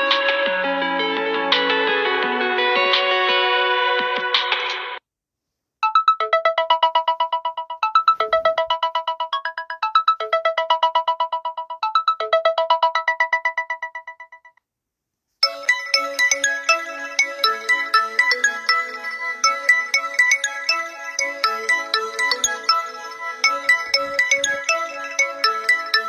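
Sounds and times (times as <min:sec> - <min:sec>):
chiming phone ringtone: 0:05.8 - 0:14.6, 0:15.4 - 0:26.0
different ringtone: 0:05.8 - 0:14.6, 0:15.4 - 0:26.0.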